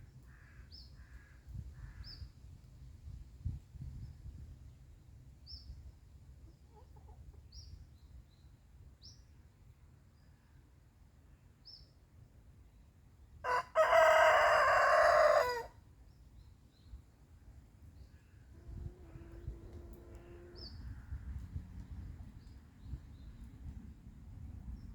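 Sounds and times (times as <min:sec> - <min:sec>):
rooster crowing: 0:13.4 - 0:15.8
small birds chirping: 0:17.9 - 0:23.7.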